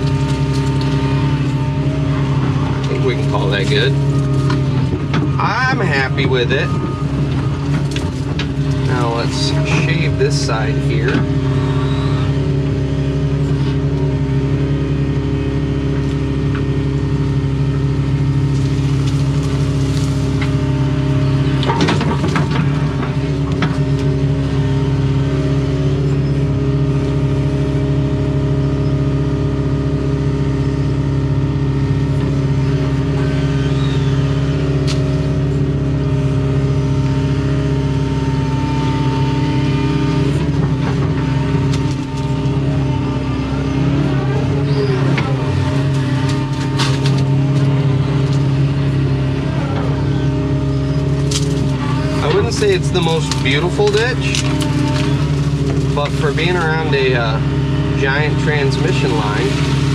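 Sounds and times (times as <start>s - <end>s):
excavator diesel engine: 0.0s - 59.9s.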